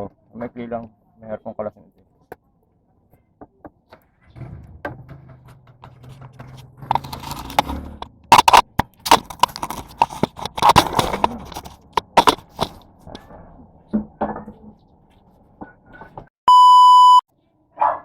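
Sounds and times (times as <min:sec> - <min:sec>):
hand tools clicking on metal: 0:06.9 - 0:12.8.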